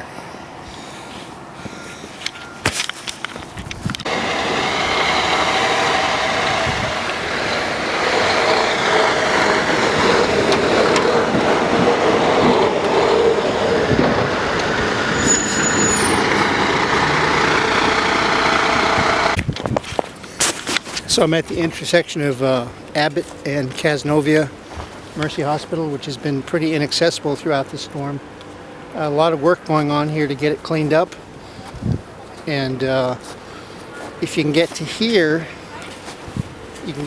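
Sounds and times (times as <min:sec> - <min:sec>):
heavy vehicle engine running: 0:04.0 - 0:19.4.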